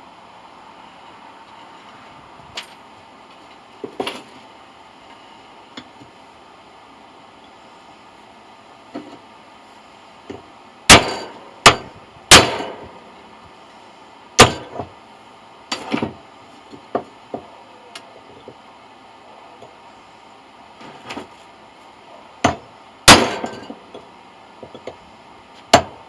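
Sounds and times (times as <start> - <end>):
hammer striking metal: 10.9 - 13.0, 14.4 - 14.8, 22.4 - 23.8.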